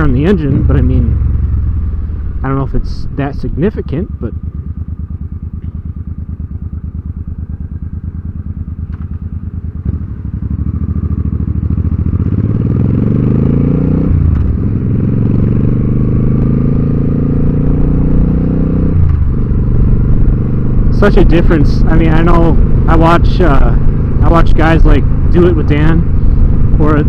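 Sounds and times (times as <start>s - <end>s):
motorcycle engine: 0.0s - 27.0s
motorcycle clunk: 8.8s - 10.0s.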